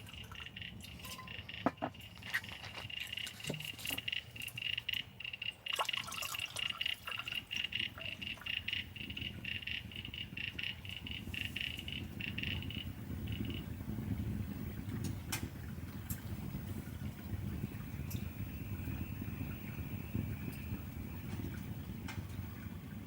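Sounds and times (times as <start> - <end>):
insect chirring: 0.0 - 13.7.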